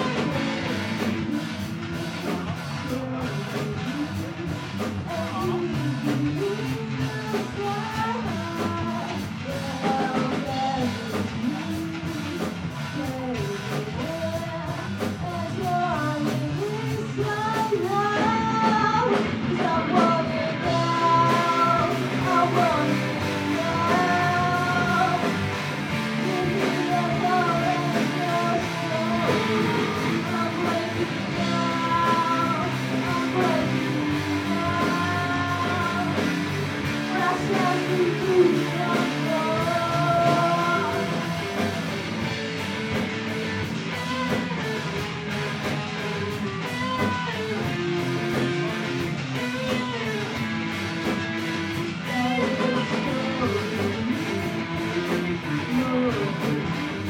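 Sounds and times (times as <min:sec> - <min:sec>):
person singing: 0:00.0 - 0:50.4, 0:51.0 - 0:57.0
live rock band: 0:00.0 - 0:57.0.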